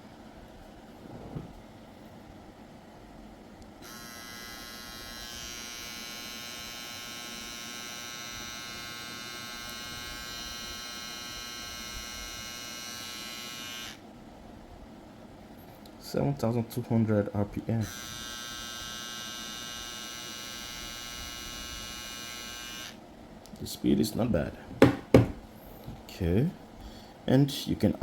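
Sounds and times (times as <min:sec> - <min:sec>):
hair trimmer buzzing: 0:03.8 - 0:14.0, 0:17.8 - 0:23.0.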